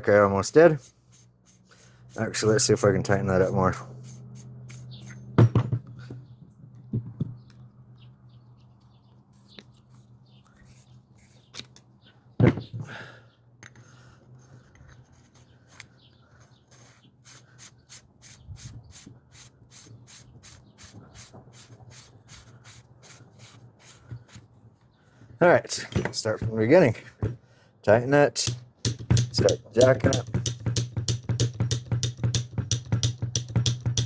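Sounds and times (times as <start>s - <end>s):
metal knocks and scraping: 28.5s - 34.0s.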